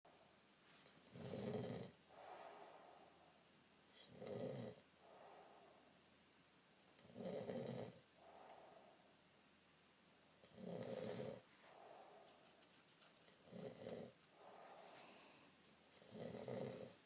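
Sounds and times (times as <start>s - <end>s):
person snoring: 1.0s - 3.1s, 3.9s - 5.7s, 7.0s - 8.8s, 10.4s - 12.2s, 13.4s - 17.0s.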